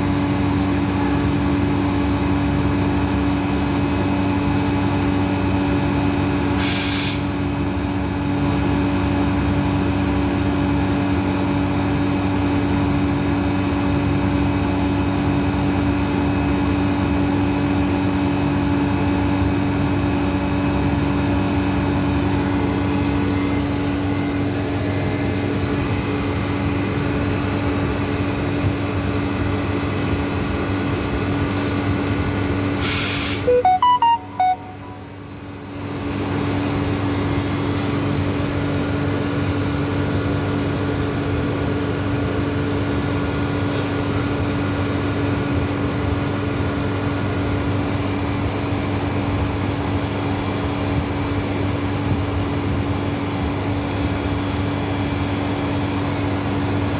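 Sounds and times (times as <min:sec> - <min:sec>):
brief hiss: 0:06.6 - 0:07.3
short beeps: 0:33.5 - 0:35.2.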